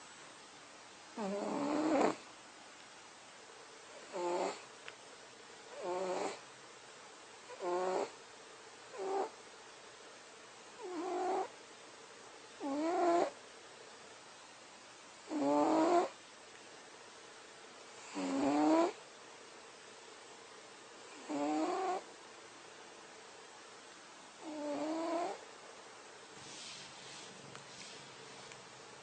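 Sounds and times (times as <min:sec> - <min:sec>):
cat snoring: 0:01.2 - 0:02.2, 0:04.0 - 0:04.6, 0:05.7 - 0:06.4, 0:07.5 - 0:08.2, 0:08.9 - 0:09.4, 0:10.8 - 0:11.5, 0:12.6 - 0:13.4, 0:15.3 - 0:16.2, 0:18.0 - 0:19.0, 0:21.1 - 0:22.1, 0:24.4 - 0:25.4.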